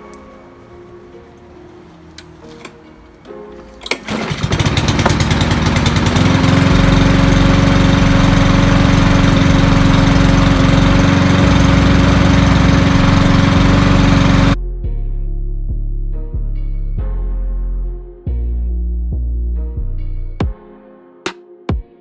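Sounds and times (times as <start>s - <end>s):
lawn mower engine running: 3.8s - 14.6s
starter rope pull: 3.8s - 14.6s.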